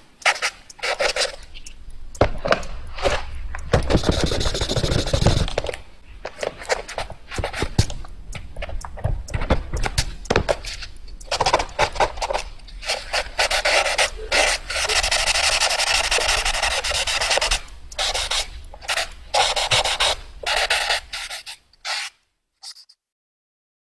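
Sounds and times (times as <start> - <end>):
pencil scratching on paper: 0.2 - 1.5, 3.8 - 5.7, 6.7 - 7.9, 10.6 - 22.9.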